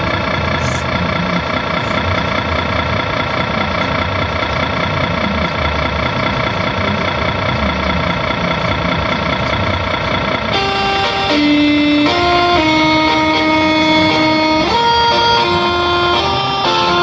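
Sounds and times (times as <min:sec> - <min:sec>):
simulated diesel engine idling: 0:00.0 - 0:17.0
multi-tone bus horn: 0:09.8 - 0:17.0.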